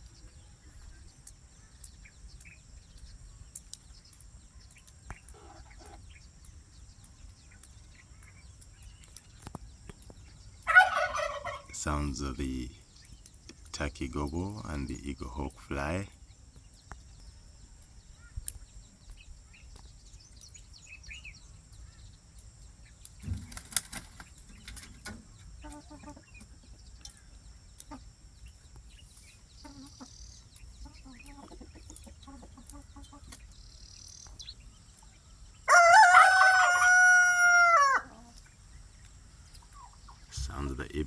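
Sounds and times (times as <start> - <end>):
poultry clucking and chirping: 0.0 - 41.0
rooster crowing: 35.7 - 38.2.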